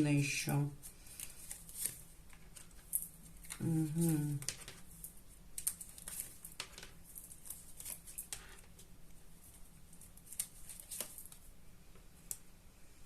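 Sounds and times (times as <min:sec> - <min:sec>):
cards rustling and tapping: 0:00.9 - 0:11.4.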